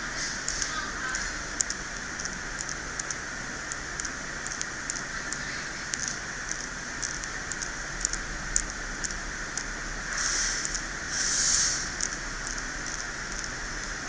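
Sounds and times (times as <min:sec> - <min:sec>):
steady hiss: 0:00.0 - 0:14.0
tool scraping circuit board: 0:10.1 - 0:14.0.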